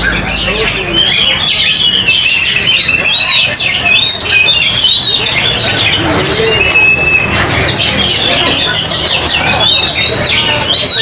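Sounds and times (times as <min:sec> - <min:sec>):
birds singing whistles and chirps: 0:00.0 - 0:11.0.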